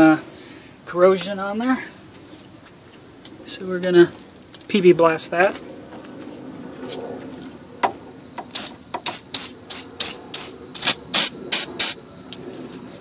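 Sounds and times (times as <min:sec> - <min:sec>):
aerosol can spraying bursts: 0:08.5 - 0:12.0.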